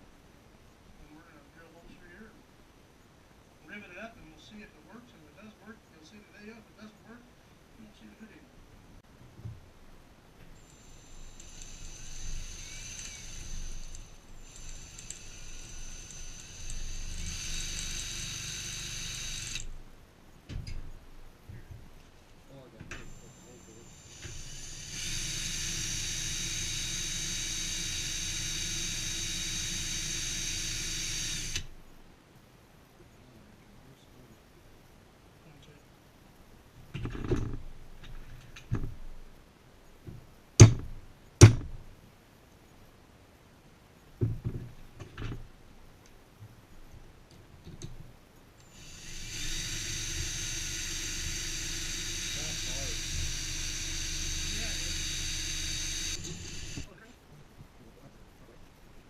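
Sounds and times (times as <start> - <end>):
power tool motor whining: 10.6 - 19.7, 23.0 - 31.7, 48.6 - 57.0.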